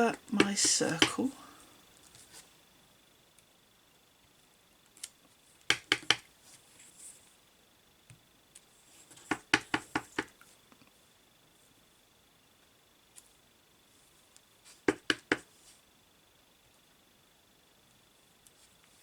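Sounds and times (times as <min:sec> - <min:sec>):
stamp tapping on ink pad: 0:05.7 - 0:06.2, 0:09.2 - 0:10.3, 0:14.8 - 0:15.5.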